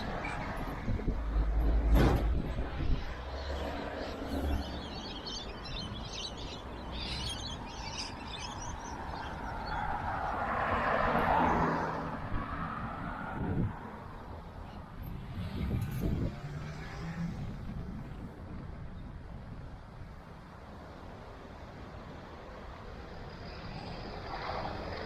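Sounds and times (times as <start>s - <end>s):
passing car tyre noise: 0.0s - 20.3s, 21.2s - 25.0s
wind rumble on microphone: 0.0s - 20.7s
small birds chirping: 3.4s - 9.8s.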